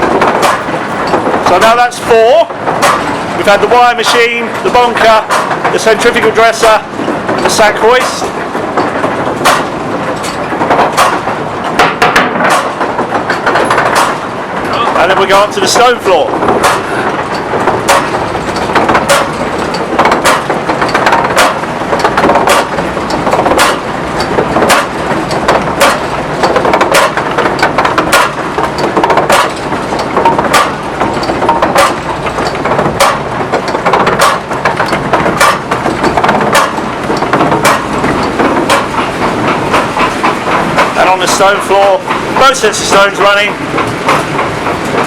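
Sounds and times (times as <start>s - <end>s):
mill machinery rumbling clatter: 0.0s - 45.0s
sharp knock: 9.4s - 9.7s, 23.4s - 23.8s, 32.9s - 39.1s.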